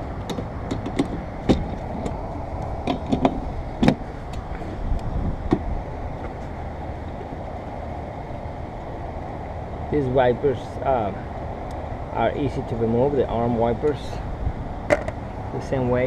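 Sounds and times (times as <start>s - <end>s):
low background rumble: 0.0s - 16.0s
clicks and knocks of car parts: 0.2s - 4.4s, 5.4s - 5.7s, 14.9s - 15.2s.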